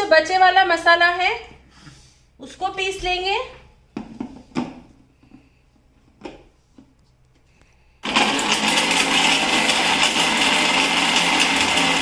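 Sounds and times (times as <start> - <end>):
electric mixer grinder grinding spices: 8.0 - 12.0.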